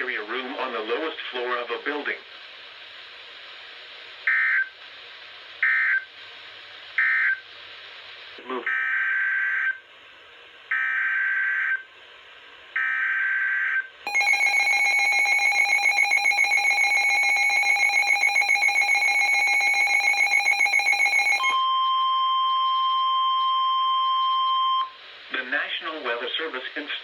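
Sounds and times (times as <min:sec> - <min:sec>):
screechy modem data bursts: 0:14.1 - 0:21.6
pulsing alarm tone: 0:14.1 - 0:22.1
steady single-pitch alert tone: 0:14.1 - 0:24.9.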